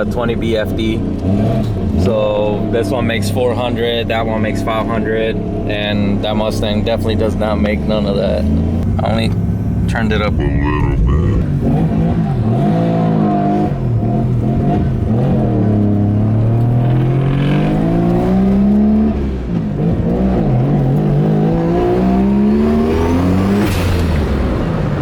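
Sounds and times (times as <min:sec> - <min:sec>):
rotary engine accelerating: 0:00.7 - 0:25.0.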